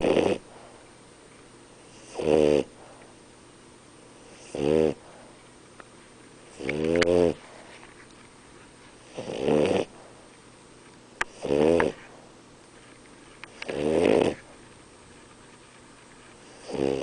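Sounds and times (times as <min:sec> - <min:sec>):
dog snoring: 0:00.0 - 0:00.6, 0:01.9 - 0:02.9, 0:04.2 - 0:05.2, 0:06.5 - 0:07.6, 0:09.0 - 0:10.1, 0:11.2 - 0:12.2, 0:13.5 - 0:14.5, 0:16.4 - 0:17.0.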